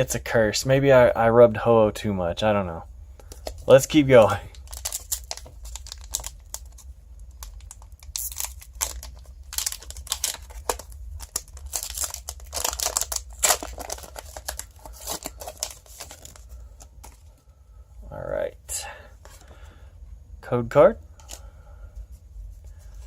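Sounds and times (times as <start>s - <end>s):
steady low hum: 0.0s - 23.0s
foil wrapper tearing and crinkling: 4.5s - 17.2s.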